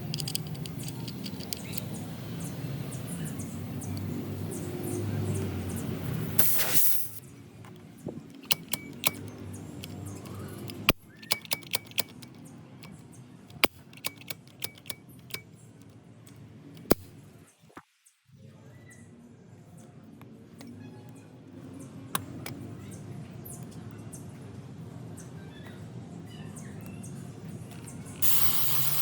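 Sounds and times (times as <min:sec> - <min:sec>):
metallic clicks of small tools: 0:00.0 - 0:02.6, 0:06.4 - 0:17.2, 0:27.7 - 0:29.0
burst of hiss: 0:06.4 - 0:07.2, 0:28.2 - 0:29.0.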